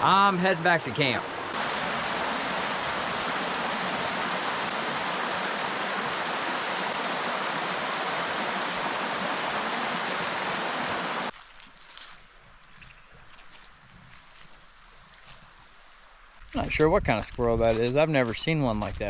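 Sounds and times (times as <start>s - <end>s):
stream water flowing: 0.0s - 11.3s.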